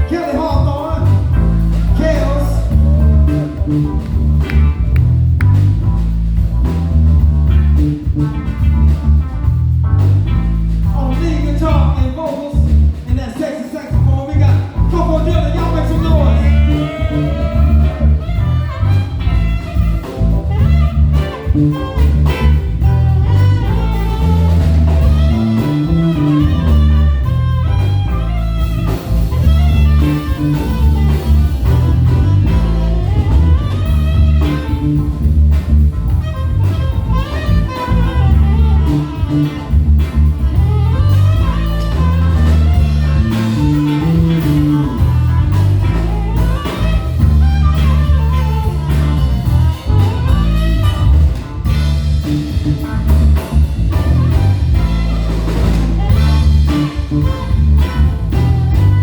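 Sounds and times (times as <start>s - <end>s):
bass line: 0.0s - 59.0s
drum kit: 0.0s - 59.0s
lead guitar soloing: 14.8s - 59.0s.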